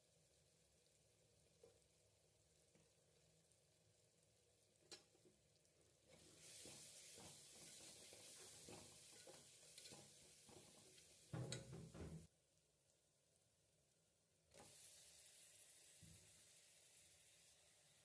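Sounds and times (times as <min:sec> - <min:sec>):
food sizzling in a pan: 0:00.0 - 0:12.3, 0:14.5 - 0:18.0
spoon stirring in a pan: 0:04.9 - 0:12.1.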